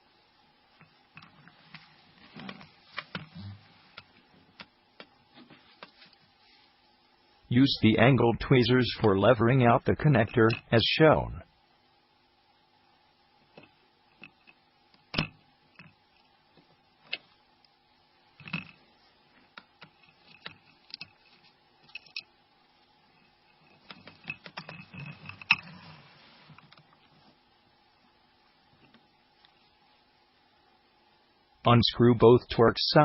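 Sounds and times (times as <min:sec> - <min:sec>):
faint steady hum: 0:00.0 - 0:33.0.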